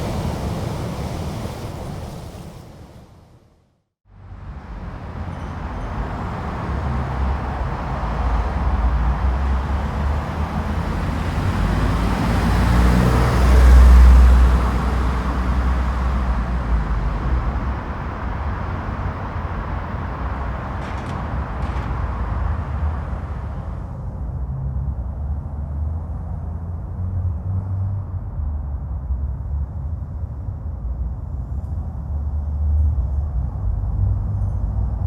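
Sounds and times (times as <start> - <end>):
car engine passing: 4.2 - 25.0
steady low rumble: 14.6 - 26.9.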